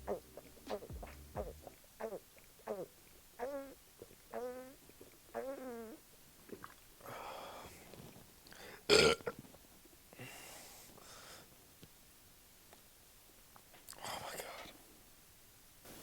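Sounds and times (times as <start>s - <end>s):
person burping: 8.9s - 9.4s.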